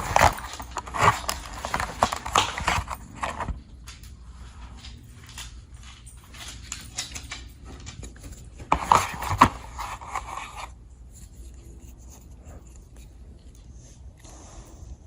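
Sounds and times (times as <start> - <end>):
multi-tool rubbing and scraping: 0.0 - 3.4, 8.2 - 13.6.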